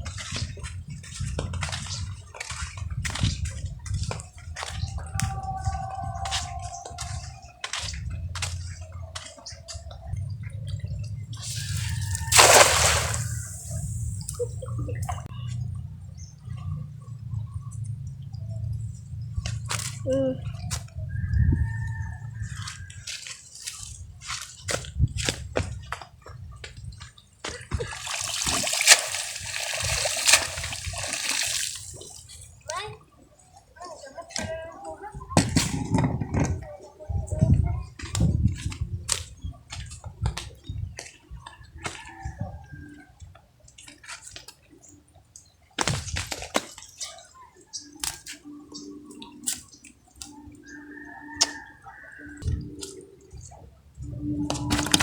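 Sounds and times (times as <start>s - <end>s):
water splashing and sloshing: 0.0s - 55.0s
low steady hum: 8.0s - 21.2s, 52.4s - 55.0s
sharp water smacks: 11.4s - 14.5s, 27.5s - 32.3s, 45.8s - 47.2s.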